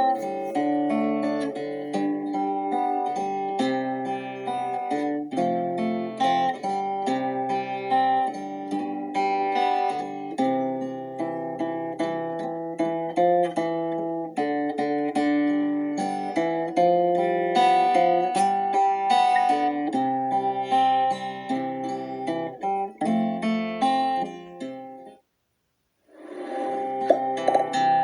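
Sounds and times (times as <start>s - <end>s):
acoustic guitar melody: 0.0s - 25.2s, 26.1s - 28.0s.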